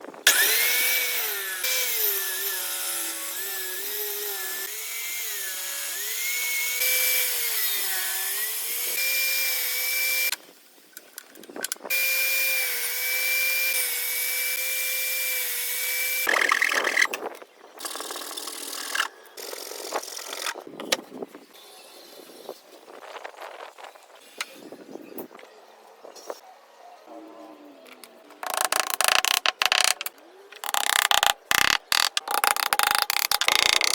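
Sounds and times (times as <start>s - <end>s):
power tool cutting wood: 0.3s - 10.4s, 11.9s - 16.3s, 28.4s - 33.9s.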